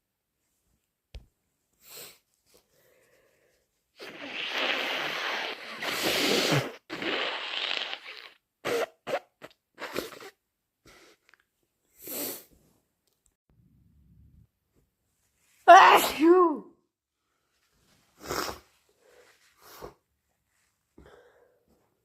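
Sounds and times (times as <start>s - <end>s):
person sniffing: 1.8s - 11.3s, 12.0s - 12.6s, 18.2s - 20.0s
person blowing nose: 4.0s - 11.2s, 12.0s - 12.5s, 18.2s - 18.8s, 19.6s - 20.0s.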